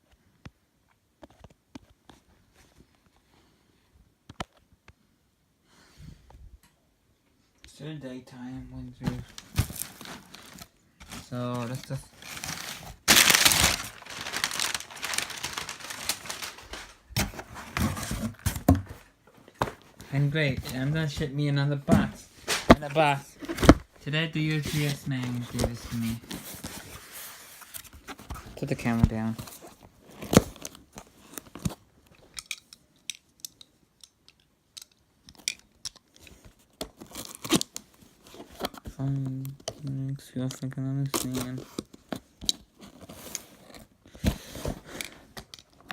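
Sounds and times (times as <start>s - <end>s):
wrapping crinkling and rustling: 9.1s - 18.8s, 22.4s - 32.6s
cardboard box handled: 9.1s - 21.3s, 21.9s - 23.9s
package ripping: 9.4s - 17.0s.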